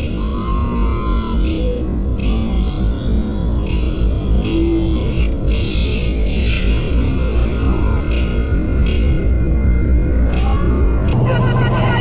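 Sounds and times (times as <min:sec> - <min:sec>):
distorted electric guitar: 0:11.1 - 0:12.0
heavy bass line: 0:11.1 - 0:12.0.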